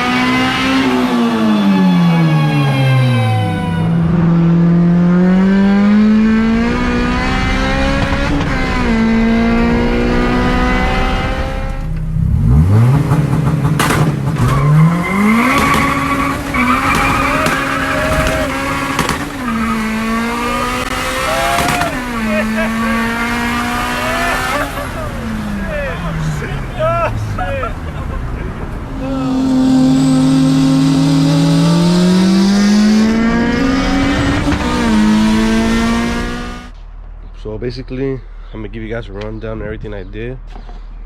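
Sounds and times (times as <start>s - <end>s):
car engine revving: 0.0s - 37.0s.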